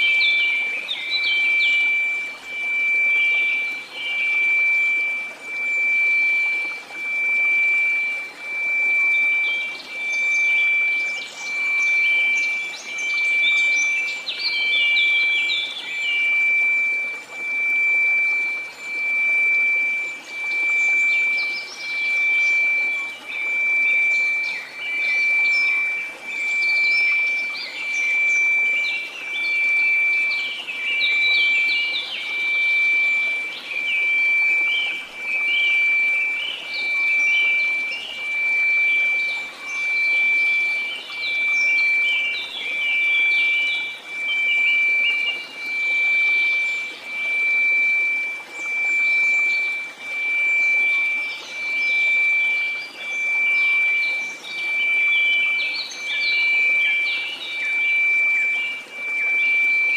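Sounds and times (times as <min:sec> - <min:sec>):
pulsing pure tone: 0:00.0 - 0:59.9.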